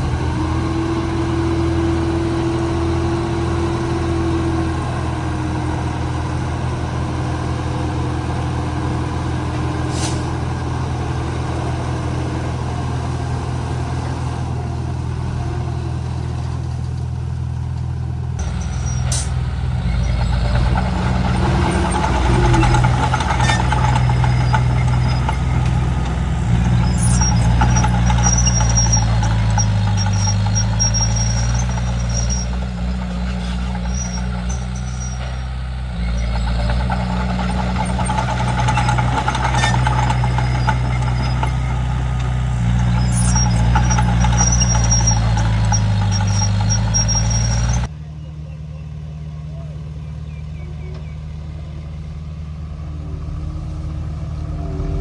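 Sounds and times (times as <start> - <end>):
bulldozer diesel engine under load: 0.0 - 55.0
faint high squeaks: 18.4 - 35.4, 42.8 - 47.9, 52.6 - 55.0.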